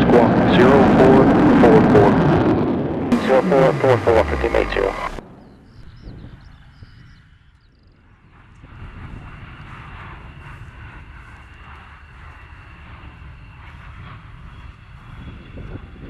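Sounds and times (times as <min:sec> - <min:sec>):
high whine: 0:00.0 - 0:06.0
jet engine roar: 0:00.0 - 0:07.4, 0:08.2 - 0:16.0.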